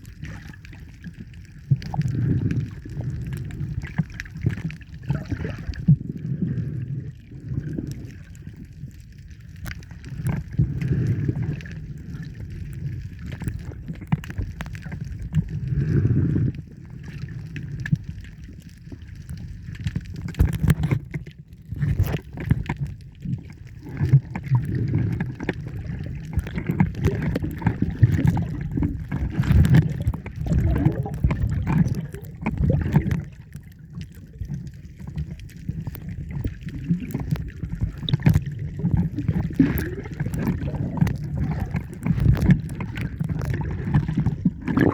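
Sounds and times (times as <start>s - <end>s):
muffled underwater sloshing: 0.0s - 44.9s
knocks and splashes: 37.0s - 44.9s.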